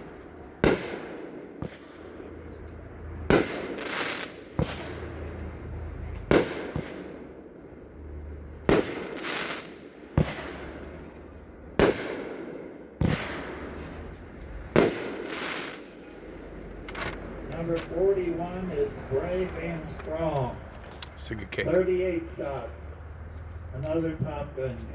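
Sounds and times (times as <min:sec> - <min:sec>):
firework bangs with hiss: 0:00.0 - 0:02.3, 0:03.2 - 0:05.4, 0:06.2 - 0:07.4, 0:08.6 - 0:16.4.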